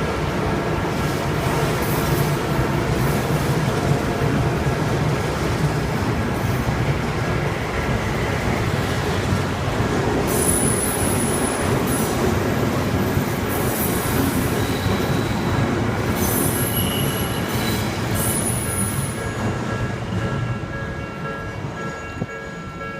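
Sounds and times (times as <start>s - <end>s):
train wheels rumbling: 0.0s - 22.9s
high-pitched wheel squeals: 13.8s - 15.6s, 16.2s - 19.4s.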